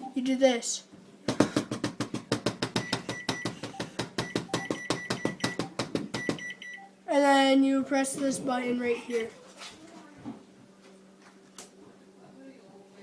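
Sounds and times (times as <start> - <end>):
microwave keypad button clicks: 2.8 - 6.8
short high keypad beeps: 2.8 - 6.9.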